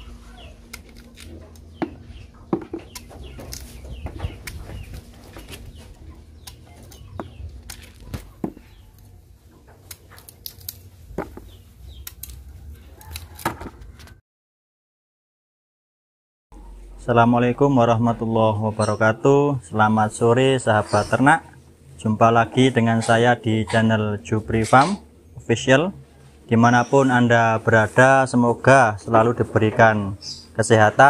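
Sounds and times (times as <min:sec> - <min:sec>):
chickens clucking: 0:00.0 - 0:10.2, 0:22.4 - 0:25.2.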